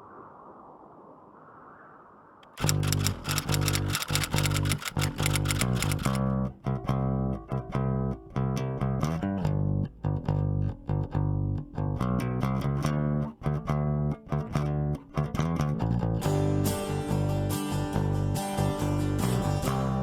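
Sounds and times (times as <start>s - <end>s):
plucked guitar over bass guitar: 6.6s - 20.0s.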